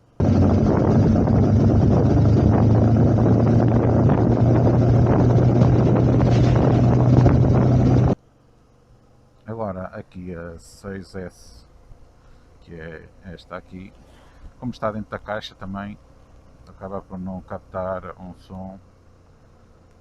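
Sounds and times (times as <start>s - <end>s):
motorcycle engine running: 0.0s - 8.2s
wind noise on microphone: 0.2s - 8.2s.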